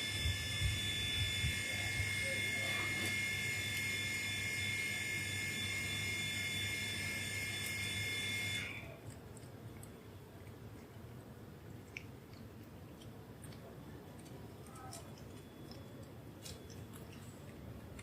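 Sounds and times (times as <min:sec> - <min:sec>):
high-pitched machine whine: 0:00.0 - 0:08.8.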